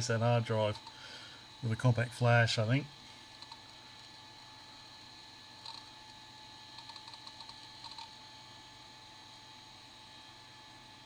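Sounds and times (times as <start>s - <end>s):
electrical hum and whine: 0.0s - 11.0s
keyboard typing: 5.6s - 5.9s, 6.8s - 8.1s.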